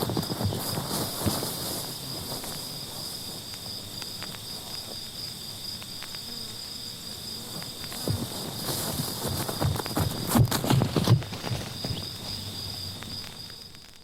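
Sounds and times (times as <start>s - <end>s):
crickets chirring: 0.0s - 14.0s
faint clicks: 3.4s - 6.3s.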